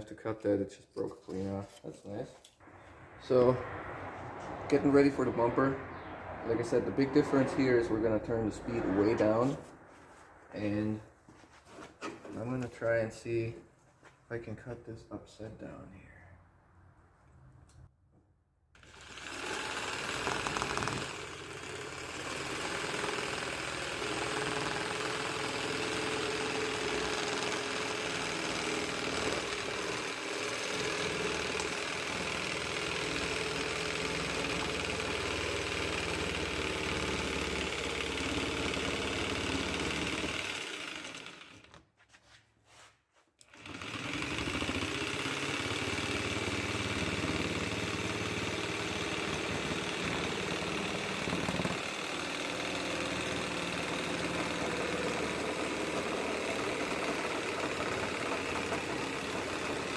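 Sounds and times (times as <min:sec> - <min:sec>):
angle grinder cutting bumper: 0:02.6 - 0:11.0, 0:18.8 - 0:41.8, 0:43.4 - 0:59.9.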